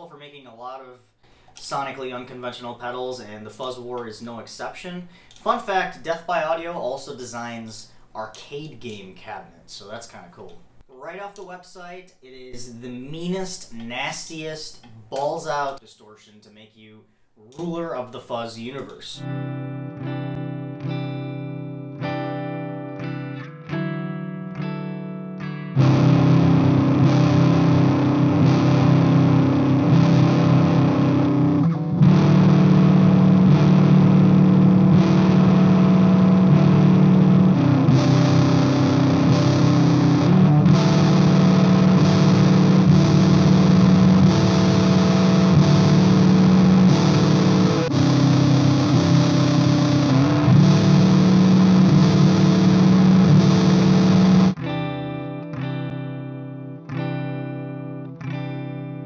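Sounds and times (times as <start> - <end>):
clean electric guitar chords: 19.2 - 59.0
fuzz-distorted guitar riffs: 19.2 - 59.0.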